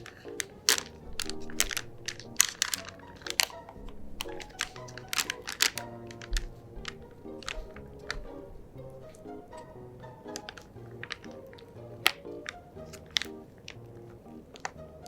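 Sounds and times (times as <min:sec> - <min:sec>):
quick clicks and taps: 0:00.0 - 0:08.5
light background music: 0:00.0 - 0:15.0.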